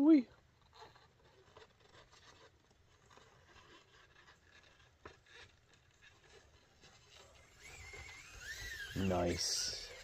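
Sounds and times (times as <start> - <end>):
toy car tyres scratching: 0.3 - 10.0
faint wavering whine: 6.6 - 10.0.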